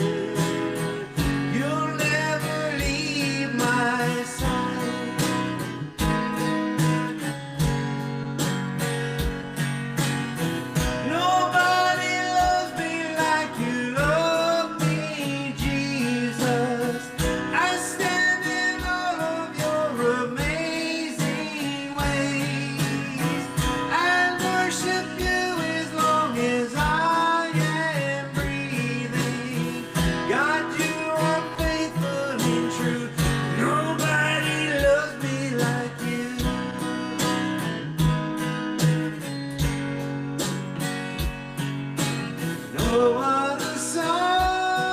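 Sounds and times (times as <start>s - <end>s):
person singing: 0.0s - 6.0s, 10.9s - 37.4s, 42.6s - 44.9s
strummed acoustic guitar: 0.0s - 44.9s.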